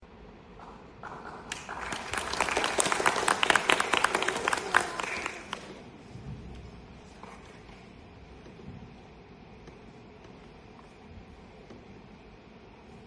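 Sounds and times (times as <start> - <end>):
audience applauding: 1.0 - 5.9.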